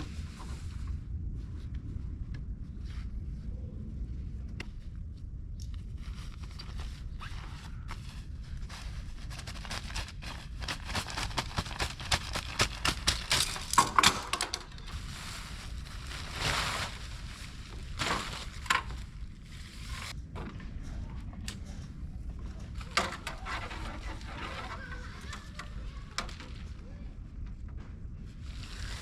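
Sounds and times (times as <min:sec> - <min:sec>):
steady low rumble: 0:00.0 - 0:29.0
hands clicking rustling and scraping: 0:05.6 - 0:15.0.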